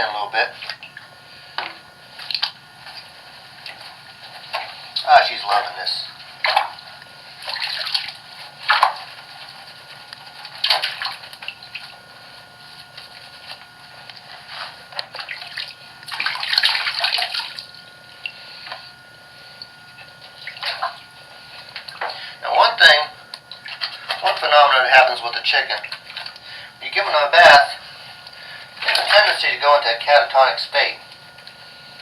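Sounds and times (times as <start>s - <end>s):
bath water splashing: 6.4s - 12.0s, 14.4s - 18.4s, 20.4s - 21.1s, 23.5s - 24.5s.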